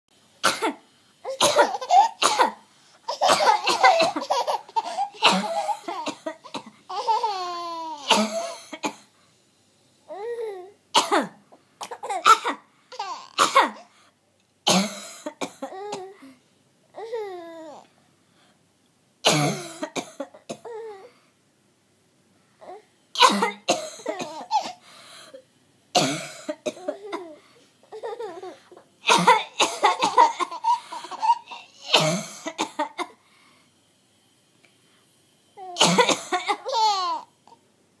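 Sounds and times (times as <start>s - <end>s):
woman coughing: 0.4s - 6.7s, 8.1s - 9.0s, 11.0s - 12.6s, 13.4s - 13.9s, 19.3s - 20.7s, 23.2s - 24.8s, 26.0s - 27.4s, 29.1s - 33.2s, 35.8s - 36.7s.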